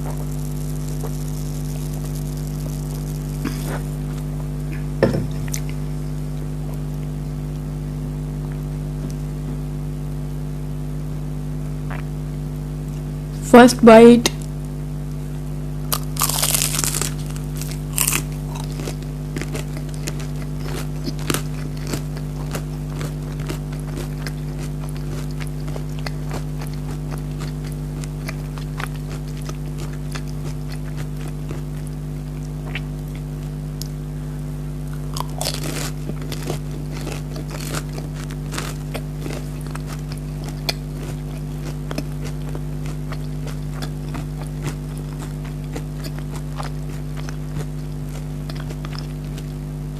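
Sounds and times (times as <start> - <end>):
low electrical hum: 0.0 - 49.9
crunching bites of crispy food: 15.9 - 34.0, 34.8 - 49.7
wet chewing: 16.0 - 33.9, 35.0 - 49.5.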